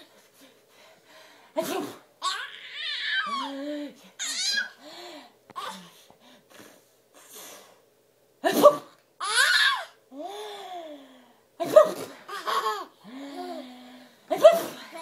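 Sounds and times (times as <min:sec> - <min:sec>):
baby laughing: 0:12.3 - 0:13.0.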